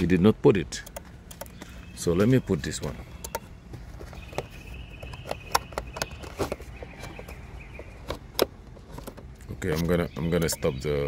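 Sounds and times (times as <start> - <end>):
plastic connector clicks and knocks: 3.1 - 3.5, 4.1 - 9.5.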